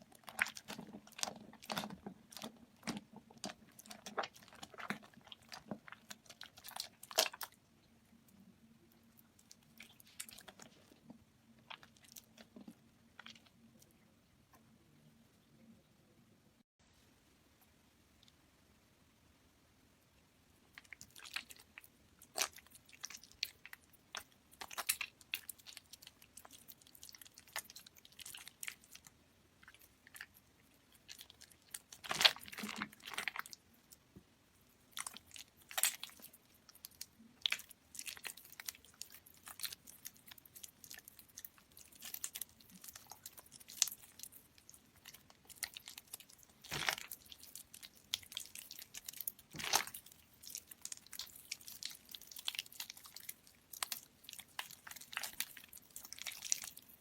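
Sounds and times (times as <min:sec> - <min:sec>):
soft soap crackling when crushed: 0:00.0 - 0:07.6, 0:20.7 - 0:57.0.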